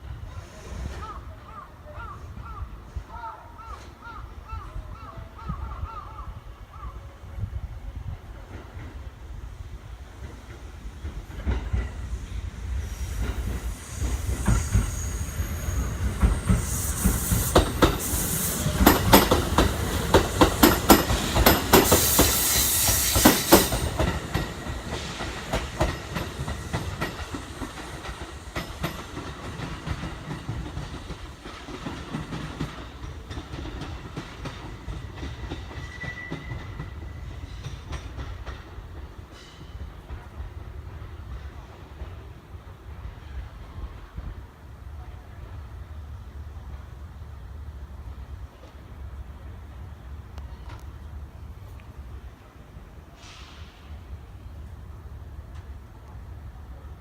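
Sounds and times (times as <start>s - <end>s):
train rumble: 0.0s - 57.0s
train wheels clacking on rail joints: 10.1s - 42.3s
hiss bursts: 11.7s - 32.5s, 52.9s - 54.5s
faint squeal: 11.9s - 19.0s, 35.7s - 37.6s.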